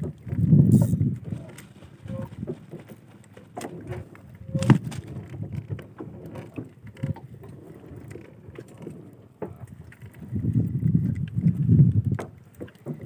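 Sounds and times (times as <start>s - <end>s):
boat knocks and clicks: 0.0s - 13.0s
water sloshing against boat: 0.0s - 13.0s.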